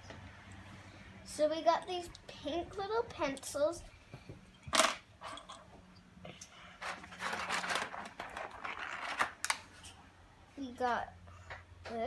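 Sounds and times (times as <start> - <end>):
packaging crinkling and rustling: 6.8 - 9.8.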